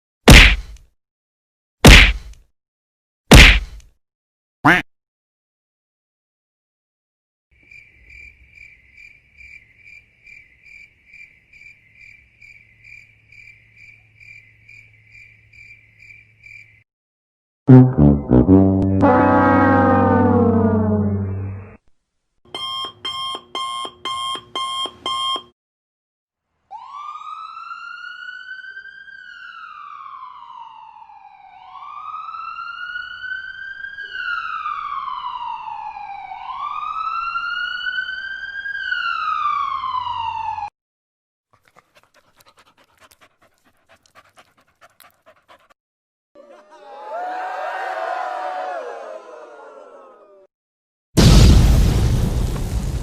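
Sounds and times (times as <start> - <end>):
siren wailing: 17.7 - 21.8, 26.7 - 40.7.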